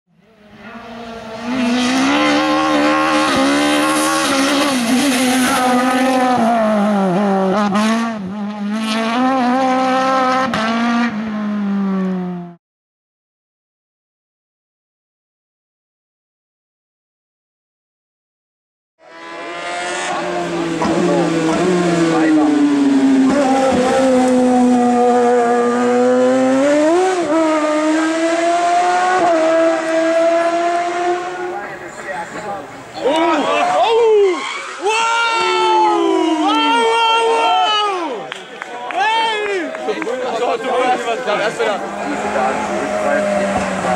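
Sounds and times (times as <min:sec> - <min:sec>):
race car engine at high revs: 0:00.2 - 0:12.6, 0:19.0 - 0:36.8, 0:39.8 - 0:43.9.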